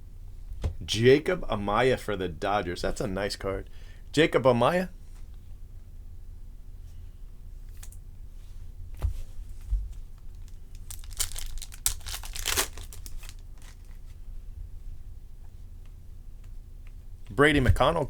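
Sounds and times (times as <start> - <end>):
wrapper crinkling and tearing: 10.2 - 14.0.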